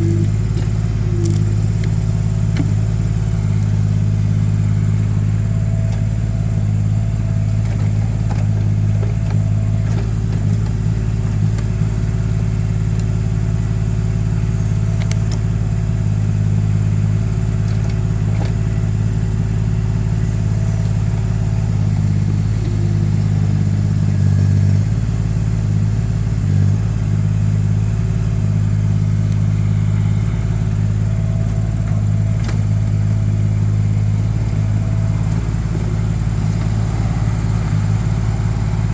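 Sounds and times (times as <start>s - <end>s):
excavator engine running: 0.0s - 38.9s.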